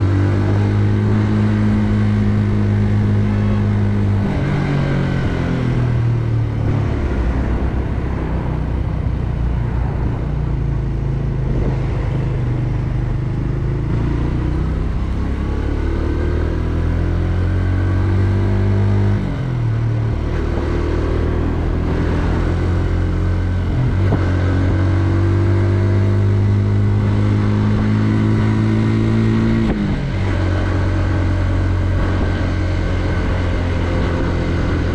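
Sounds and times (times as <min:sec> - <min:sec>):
motorcycle engine running: 0:17.7 - 0:34.9.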